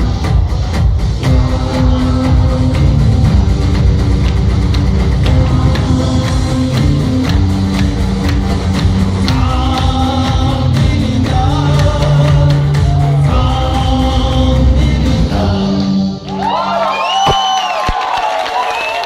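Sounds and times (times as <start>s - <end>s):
drum beat: 0.0s - 15.5s
bass: 0.0s - 17.8s
person singing: 1.2s - 8.0s, 8.8s - 16.9s.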